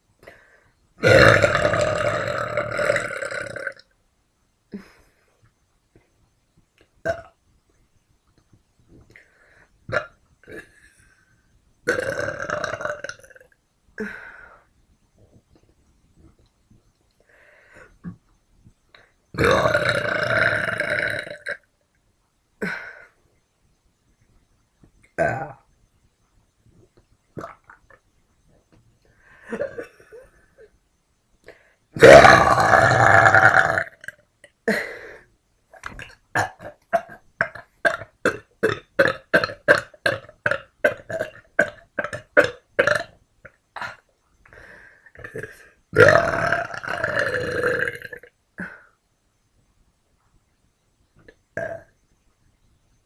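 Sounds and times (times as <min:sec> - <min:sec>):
woman burping: 0:01.0 - 0:03.8, 0:07.1 - 0:07.3, 0:09.9 - 0:10.9, 0:11.9 - 0:13.4, 0:19.4 - 0:21.6, 0:25.2 - 0:25.6, 0:29.4 - 0:30.7, 0:32.0 - 0:44.1, 0:45.1 - 0:49.0, 0:51.3 - 0:51.9.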